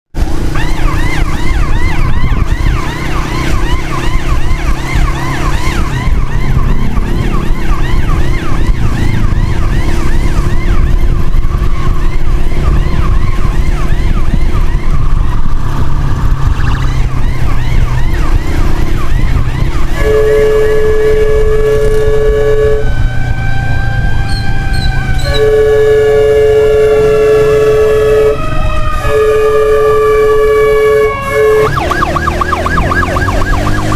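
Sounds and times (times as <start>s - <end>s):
engine and wind rumble: 0.1s - 33.9s
emergency siren yelp: 0.2s - 33.9s
steady horn note: 20.0s - 23.1s, 24.6s - 33.0s.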